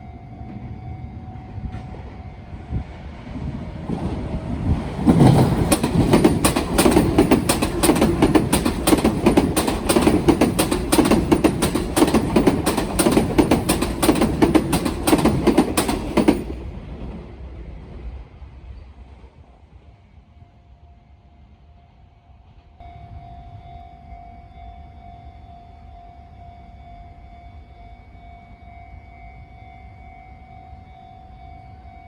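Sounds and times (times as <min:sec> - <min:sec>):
train rumble: 0:00.0 - 0:28.4
train wheels clacking over joints: 0:03.9 - 0:16.7.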